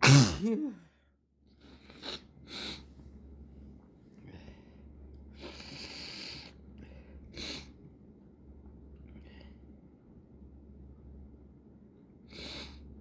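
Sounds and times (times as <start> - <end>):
short sharp sneeze: 0.0 - 0.6.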